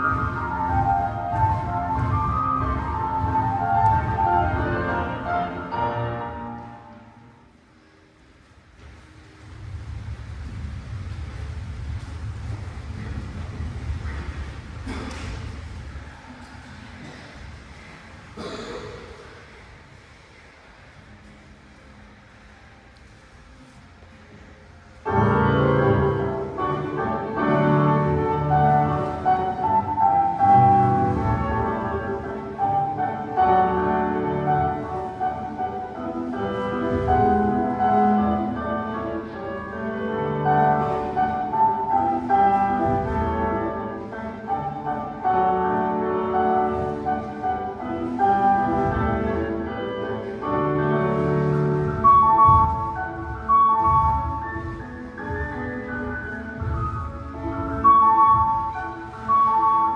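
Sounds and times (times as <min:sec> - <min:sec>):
piano music: 0:00.0 - 0:07.5, 0:25.0 - 0:59.9.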